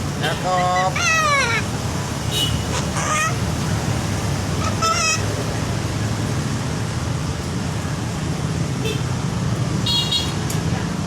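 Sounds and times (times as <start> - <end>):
cockatoo squawking: 0.2 - 1.8, 2.4 - 3.6, 4.5 - 5.4.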